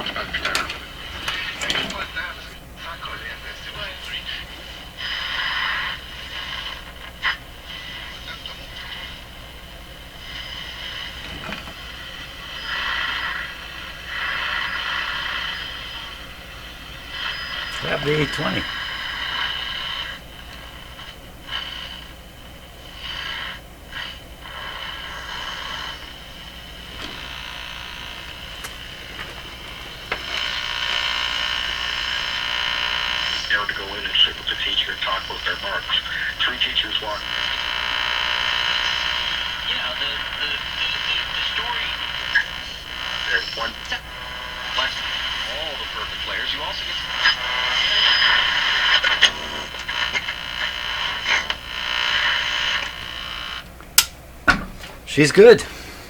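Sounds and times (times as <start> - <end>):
radio dial click: 0.0 - 2.6, 10.4 - 13.5, 17.2 - 19.7, 25.2 - 36.2, 37.2 - 54.2
radio static and hiss: 0.0 - 53.8, 55.0 - 56.0.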